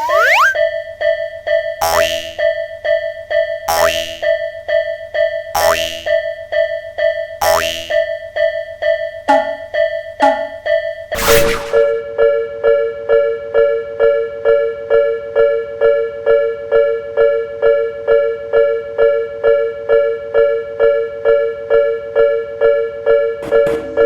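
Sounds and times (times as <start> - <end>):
railroad crossing bell ringing: 8.7 - 11.1.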